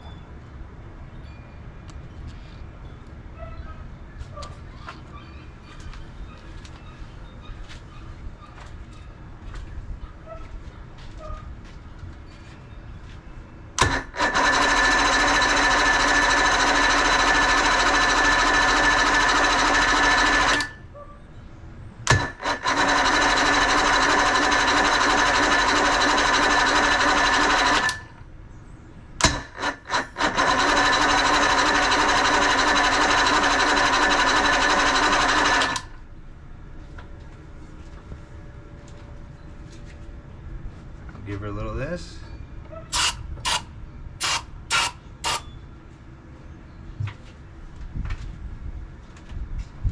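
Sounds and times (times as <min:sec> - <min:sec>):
electric starter cranking engine: 0:13.8 - 0:20.8, 0:22.1 - 0:28.2, 0:29.2 - 0:36.0, 0:42.9 - 0:45.5.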